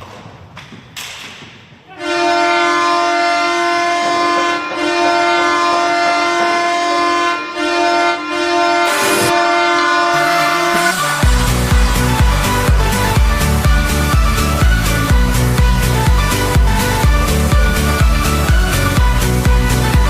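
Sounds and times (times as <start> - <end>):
goal horn blasts: 1.9 - 20.0.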